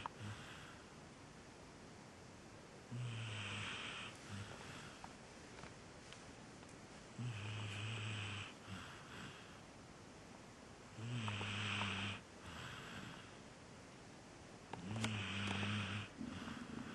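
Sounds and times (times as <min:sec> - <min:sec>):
dog snoring: 0:00.0 - 0:00.8, 0:02.9 - 0:05.0, 0:07.2 - 0:09.6, 0:10.9 - 0:13.4, 0:14.8 - 0:16.9.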